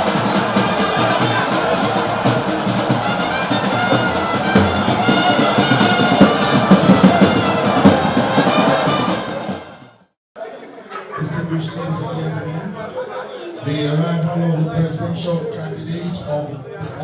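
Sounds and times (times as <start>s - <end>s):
drum kit beating: 0.0s - 9.9s
brass horns playing: 0.0s - 10.2s.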